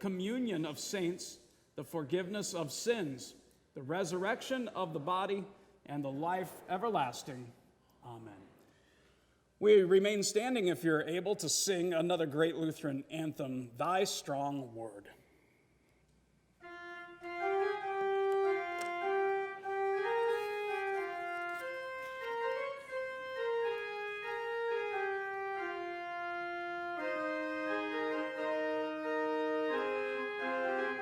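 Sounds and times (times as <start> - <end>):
church organ playing: 16.6 - 31.0.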